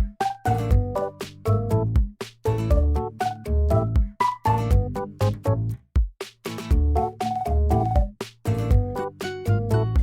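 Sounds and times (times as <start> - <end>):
cute bouncy background music: 0.0 - 10.0.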